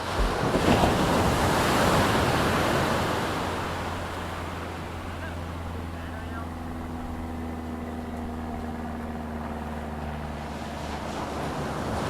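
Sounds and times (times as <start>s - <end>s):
wave breaking and rushing up shore: 0.0s - 6.6s, 9.6s - 12.0s.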